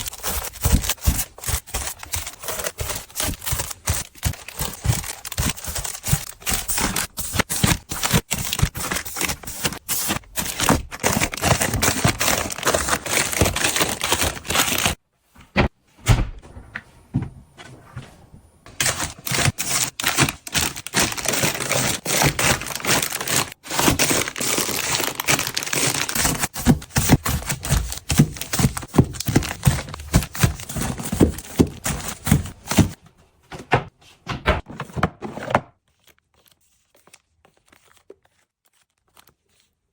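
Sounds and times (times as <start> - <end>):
packaging clicks and knocks: 0.0 - 15.0, 18.7 - 33.0
plastic crinkling: 0.0 - 15.0, 18.7 - 33.0.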